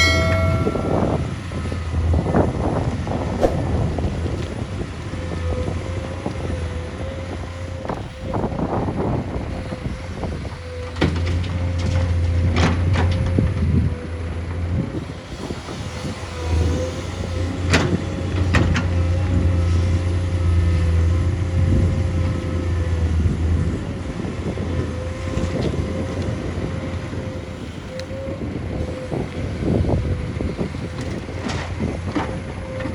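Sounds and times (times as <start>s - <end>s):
sharp metallic knocks: 0.0s - 1.8s
steady whine: 0.0s - 2.0s
diesel machinery engine drone: 0.0s - 32.9s.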